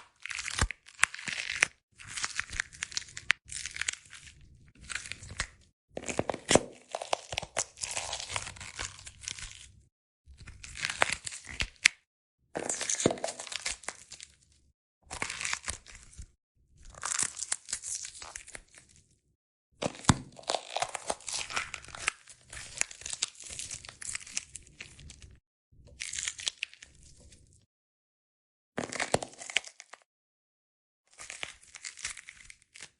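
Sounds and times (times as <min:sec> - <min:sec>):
pepper crunching and snapping: 0:00.0 - 0:04.2, 0:04.8 - 0:09.5, 0:19.8 - 0:24.4.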